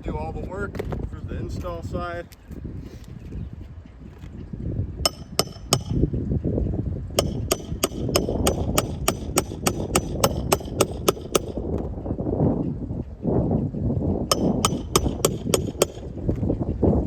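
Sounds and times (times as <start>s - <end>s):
steady low rumble: 3.4s - 17.0s
hammer driving roofing nails: 5.1s - 6.1s, 7.2s - 11.9s, 14.3s - 16.4s.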